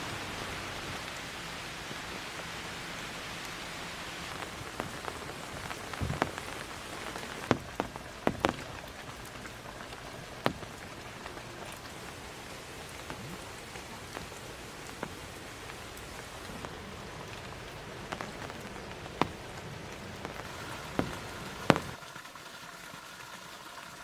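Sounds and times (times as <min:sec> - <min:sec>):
heavy rain on tent fabric: 0:00.0 - 0:24.0
sharp clicks and taps: 0:04.4 - 0:11.9, 0:13.0 - 0:22.0.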